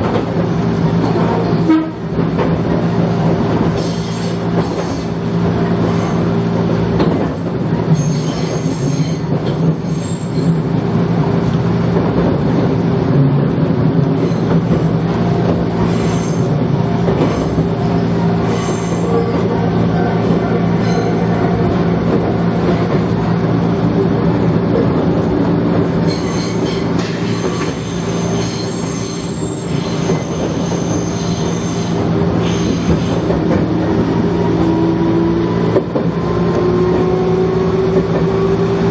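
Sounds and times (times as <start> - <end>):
high-pitched wheel squeal: 3.8 - 5.0, 7.9 - 10.6, 18.4 - 19.3, 20.8 - 21.4, 26.0 - 33.2
wheel-on-rail noise: 13.7 - 38.9.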